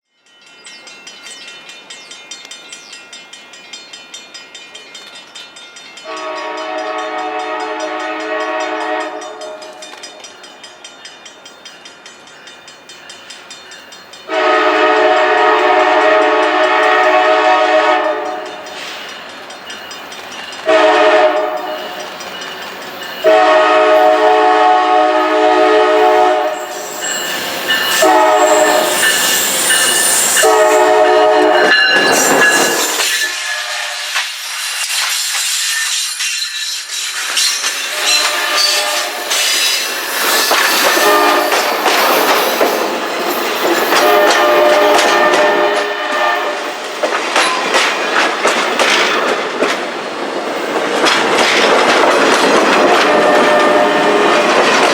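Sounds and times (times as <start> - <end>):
wheels clicking over rail joints: 4.6 - 14.3, 34.1 - 46.0, 46.6 - 54.9
locomotive air horn: 6.1 - 9.8, 14.3 - 18.6, 20.7 - 22.0, 23.2 - 27.2, 27.9 - 31.8, 33.0 - 34.2, 37.9 - 39.5, 40.8 - 41.8, 44.0 - 46.8, 52.9 - 54.8.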